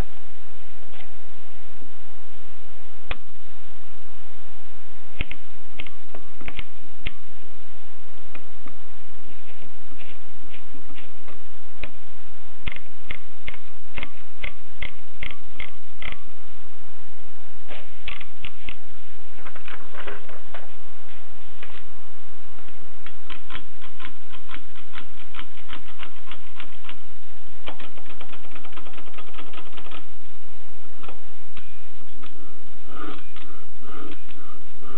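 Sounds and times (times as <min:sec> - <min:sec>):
steady hiss: 0:00.0 - 0:34.9
typewriter clicking: 0:23.3 - 0:27.0, 0:27.6 - 0:30.0.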